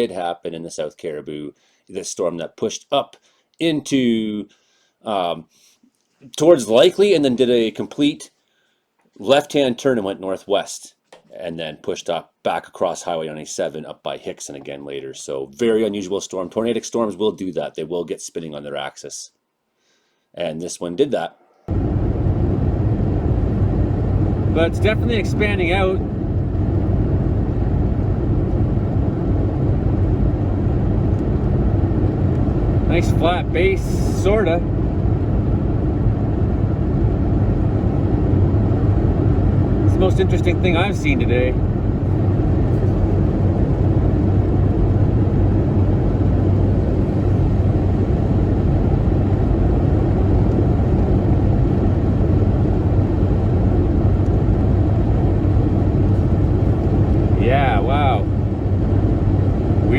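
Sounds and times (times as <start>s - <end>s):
car road and engine noise: 21.7s - 59.9s.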